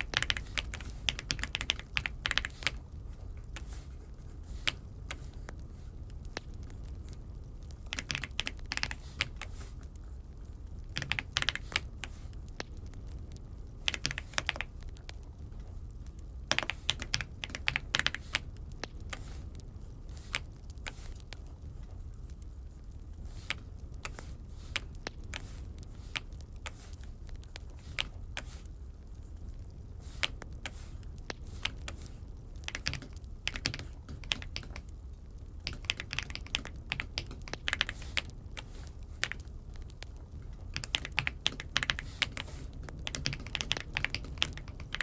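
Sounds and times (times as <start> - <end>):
mechanical keyboard typing: 0.0 - 3.9, 4.5 - 9.6, 10.9 - 19.5, 23.3 - 28.7, 29.6 - 45.0.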